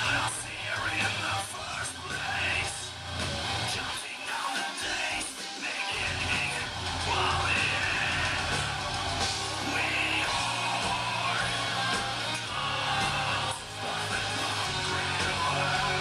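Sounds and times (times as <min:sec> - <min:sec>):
metal band playing live: 0:00.0 - 0:16.0
shouted vocals: 0:03.8 - 0:16.0.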